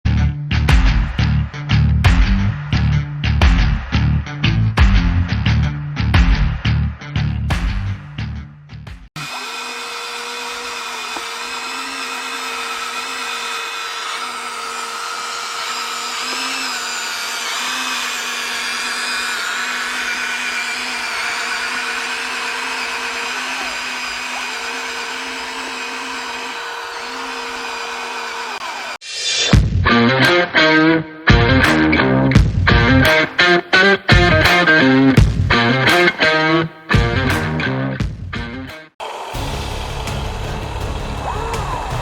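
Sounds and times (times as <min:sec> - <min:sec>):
music: 0:00.1 - 0:09.1, 0:29.0 - 0:42.0
toy electric motor whirring: 0:09.2 - 0:29.0.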